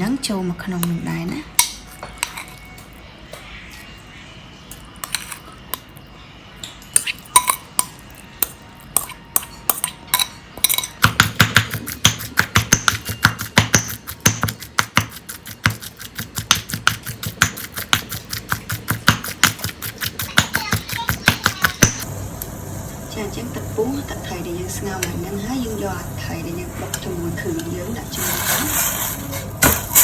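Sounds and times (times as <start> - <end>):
pestle pounding in a mortar: 10.6 - 22.0.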